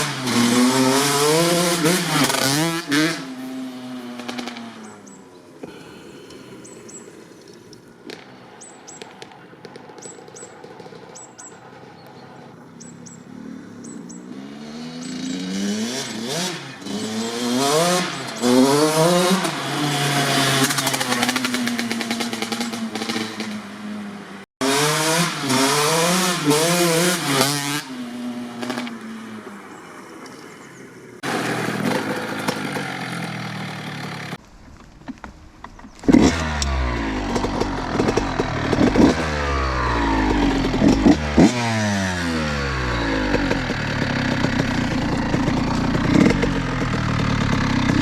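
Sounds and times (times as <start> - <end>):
two-stroke motorcycle engine revving: 0.0 - 7.2, 12.9 - 29.6, 30.7 - 34.4, 36.0 - 48.0.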